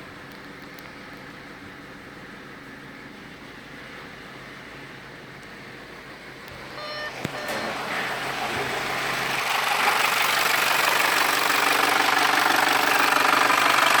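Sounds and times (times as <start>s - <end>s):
mechanical engine noise: 6.1s - 14.0s
car engine running: 6.4s - 14.0s.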